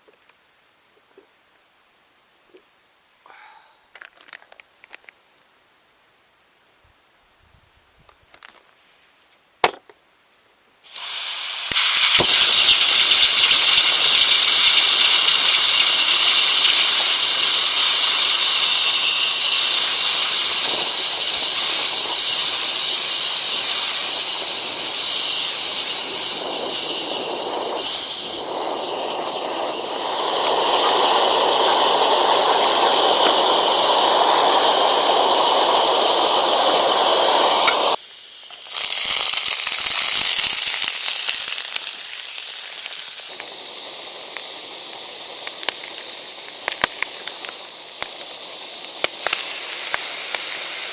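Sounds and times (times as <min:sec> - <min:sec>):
stove burner hissing: 0:10.8 - 0:50.9.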